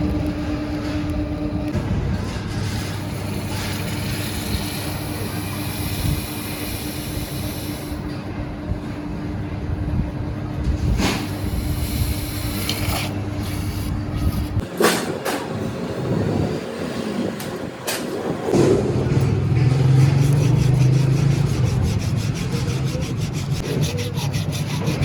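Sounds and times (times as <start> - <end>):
rasping noise: 19.6 - 25.0.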